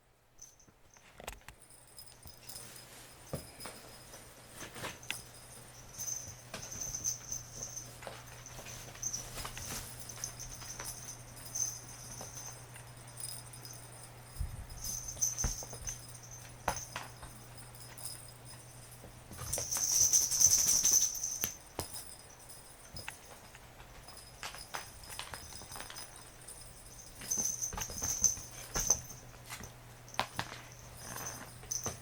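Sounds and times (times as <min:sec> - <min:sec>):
cat toy bell jingling: 0:01.6 - 0:32.0.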